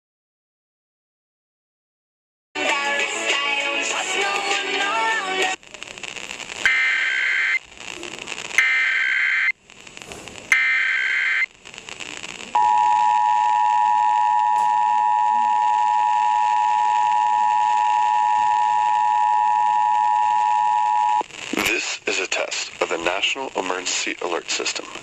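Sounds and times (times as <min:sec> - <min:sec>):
faint hiss: 0:03.3 - 0:12.6, 0:21.2 - 0:25.0
warbling digital data screech: 0:08.4 - 0:09.6, 0:10.5 - 0:11.5.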